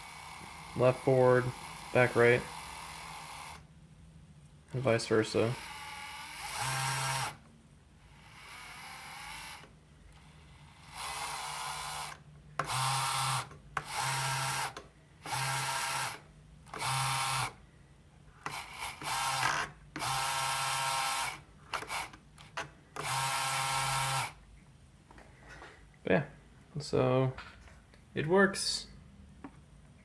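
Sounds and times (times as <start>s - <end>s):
electric motors whining: 4.8s - 7.4s, 8.1s - 17.6s, 18.4s - 24.4s.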